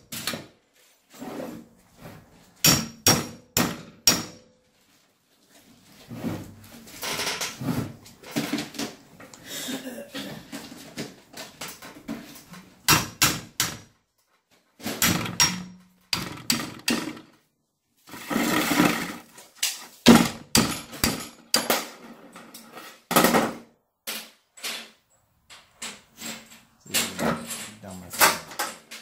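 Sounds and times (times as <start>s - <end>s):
rough metal scraping: 18.0s - 20.4s.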